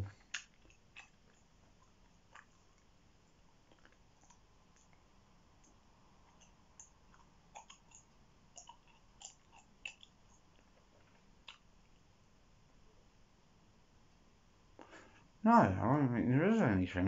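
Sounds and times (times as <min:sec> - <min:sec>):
gum chewing mouth clicks: 0:00.0 - 0:02.9, 0:03.5 - 0:05.0, 0:05.6 - 0:11.7.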